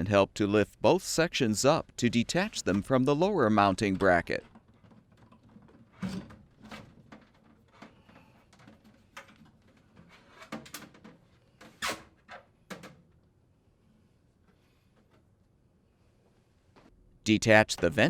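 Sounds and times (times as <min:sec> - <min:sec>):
metal ducting clunks and knocks: 0:03.8 - 0:13.2.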